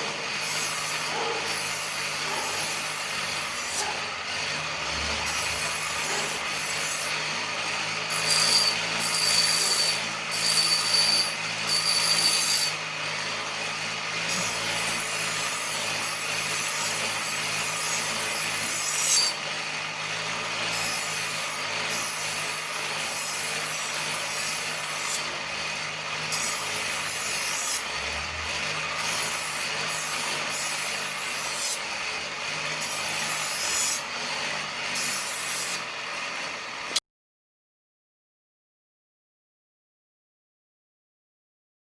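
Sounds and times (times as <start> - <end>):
knife scraping on sharpener: 0.0 - 4.1, 5.2 - 7.3, 8.1 - 12.8, 14.3 - 19.5, 20.8 - 35.9.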